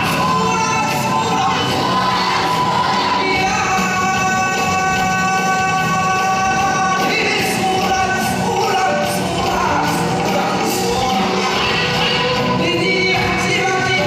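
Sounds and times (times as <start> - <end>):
music with steady beat: 0.0 - 14.0.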